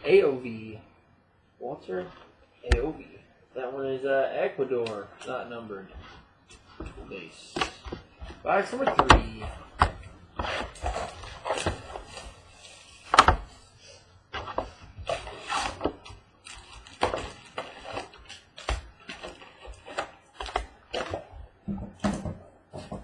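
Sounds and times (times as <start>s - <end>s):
foil packs rustling and crinkling: 6.0s - 13.8s, 14.4s - 21.6s.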